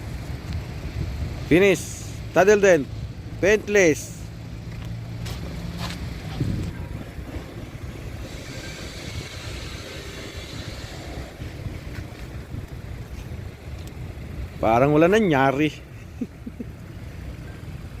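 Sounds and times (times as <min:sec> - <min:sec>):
vehicle engine rumbling: 0:00.0 - 0:18.0
hiss: 0:08.1 - 0:11.6.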